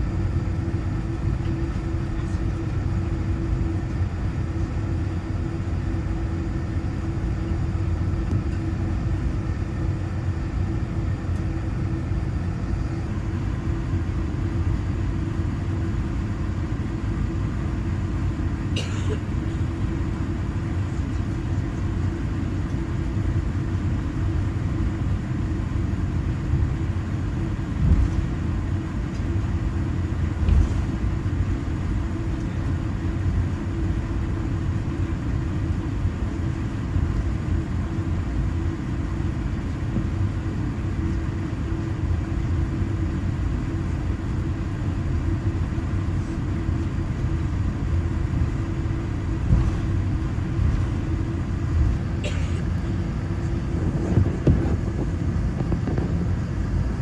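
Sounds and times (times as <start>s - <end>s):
airplane cabin low rumble: 0.0s - 57.0s
soft bumps: 49.4s - 50.0s, 53.4s - 56.5s.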